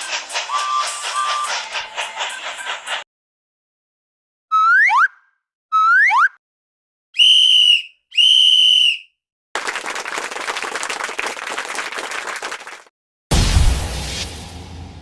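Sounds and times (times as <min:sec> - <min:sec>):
shrill whistle blasts: 0:00.5 - 0:01.7, 0:07.2 - 0:09.2
applause-like crowd noise: 0:09.6 - 0:12.9.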